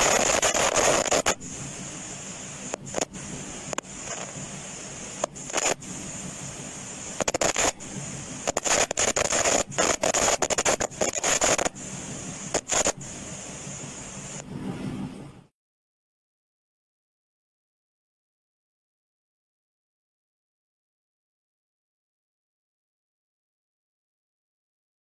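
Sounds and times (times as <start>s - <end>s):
microphone crackling and scratching: 0.0s - 1.6s, 2.7s - 4.4s, 5.2s - 5.8s, 7.2s - 11.8s, 12.4s - 13.1s
electrical hum and whine: 0.0s - 15.5s.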